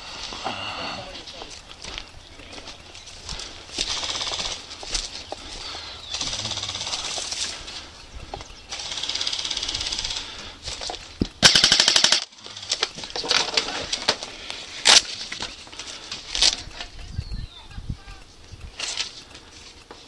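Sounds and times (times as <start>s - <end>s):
airsoft gun bursts: 3.9s - 4.6s, 8.7s - 10.3s, 11.4s - 12.4s.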